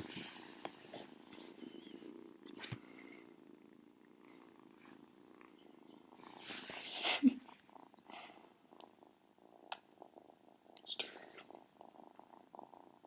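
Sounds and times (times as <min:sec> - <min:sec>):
cat purring: 0:00.0 - 0:13.0
rustle: 0:06.2 - 0:07.7.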